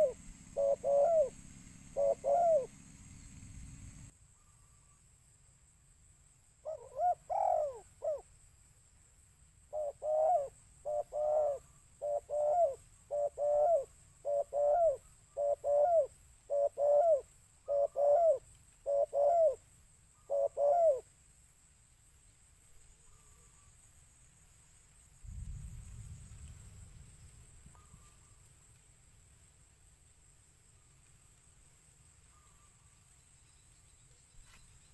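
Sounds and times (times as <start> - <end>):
dove cooing: 0.0 - 3.0, 6.7 - 8.2, 9.7 - 19.6, 20.2 - 21.0.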